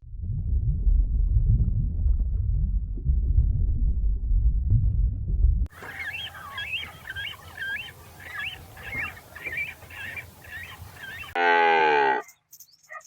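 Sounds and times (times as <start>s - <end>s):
low rumble: 0.0s - 5.7s
bird chirping: 5.7s - 11.4s
cow mooing: 8.4s - 12.3s.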